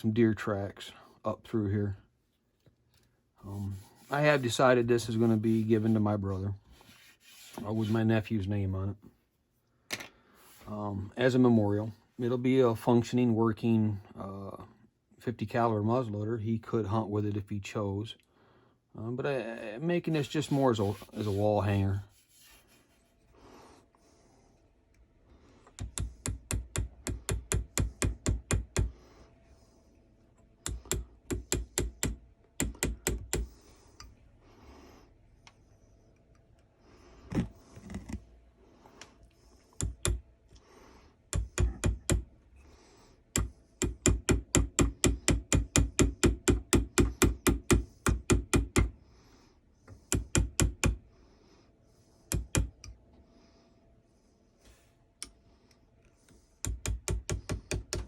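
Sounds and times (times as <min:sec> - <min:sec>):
mallet tapping chisel into wood: 0:25.8 - 0:28.9, 0:41.3 - 0:42.3, 0:43.4 - 0:48.9, 0:56.6 - 0:58.0.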